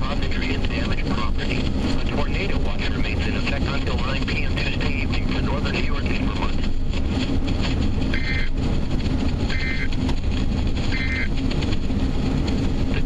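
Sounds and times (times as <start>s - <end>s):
radio noise: 0.0s - 6.8s, 8.0s - 8.7s, 9.3s - 10.1s, 10.8s - 11.4s
buzzy data tone bursts: 8.1s - 8.6s, 9.5s - 9.9s, 10.9s - 11.3s.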